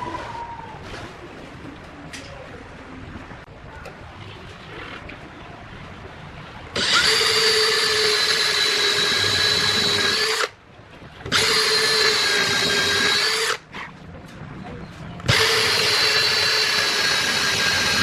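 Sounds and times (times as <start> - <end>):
power tool motor whining: 6.8 - 10.5, 11.3 - 13.6, 15.3 - 18.0.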